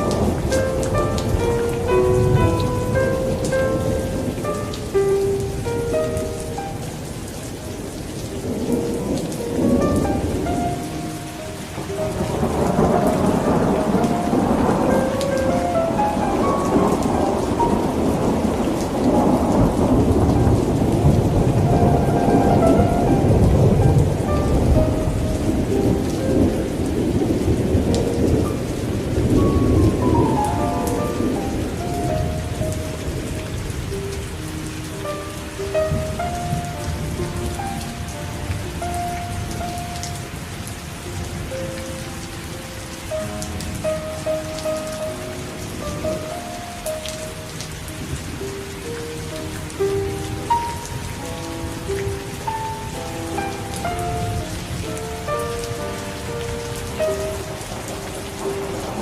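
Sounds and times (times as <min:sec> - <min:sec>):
low thunder rumble: 0:00.0 - 0:34.1, 0:53.4 - 0:59.0
heavy rain falling: 0:00.0 - 0:59.0
slow melody of held notes: 0:00.0 - 0:59.0.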